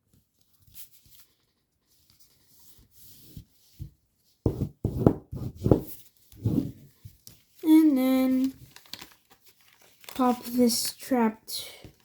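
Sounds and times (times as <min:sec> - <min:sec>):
paper rustling: 0:00.0 - 0:03.6, 0:05.9 - 0:11.2
paper being folded and rubbed: 0:00.4 - 0:11.2.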